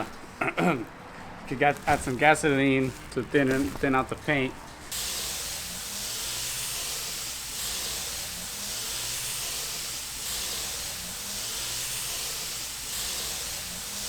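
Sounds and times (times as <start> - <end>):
paint spray gun hissing: 4.9 - 14.0.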